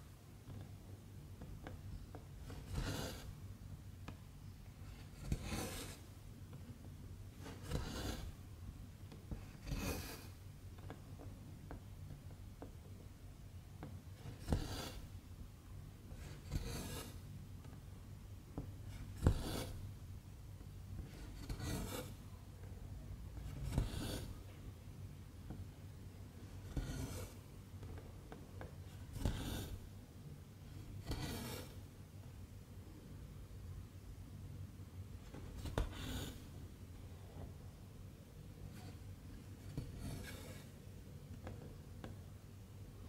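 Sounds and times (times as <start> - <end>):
thread rasping through fabric: 1.6 - 3.3, 7.4 - 8.4, 9.3 - 10.9, 14.2 - 15.1, 16.2 - 17.2, 18.9 - 19.8, 21.0 - 22.2, 23.4 - 24.4, 26.6 - 29.9, 30.8 - 31.8, 38.7 - 40.8.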